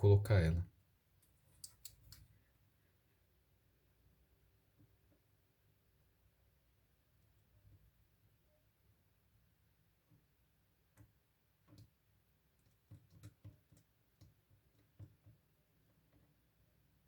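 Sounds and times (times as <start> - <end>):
light clicks and taps of small parts: 1.2 - 2.4, 10.9 - 16.4.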